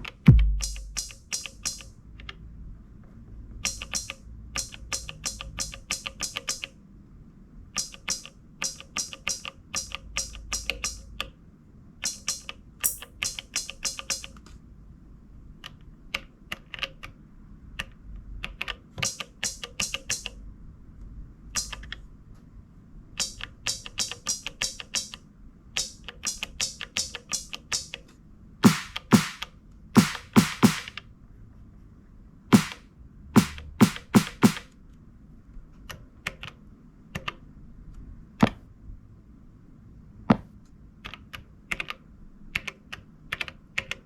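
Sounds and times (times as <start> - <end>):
steady low bass: 0.3 - 1.1
sharp hi-hat-like clicks: 0.3 - 1.9, 3.6 - 6.7, 7.8 - 11.2, 12.0 - 14.4, 19.0 - 20.3, 23.2 - 25.2, 25.8 - 28.0, 28.6 - 31.0, 32.6 - 32.8, 33.4 - 34.7.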